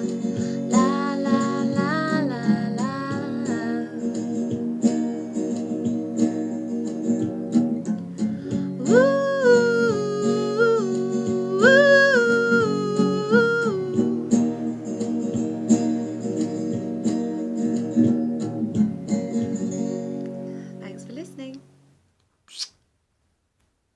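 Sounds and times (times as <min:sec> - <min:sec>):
woman singing high notes: 0:00.0 - 0:04.1, 0:08.8 - 0:14.2
acoustic guitar strumming: 0:00.0 - 0:22.0.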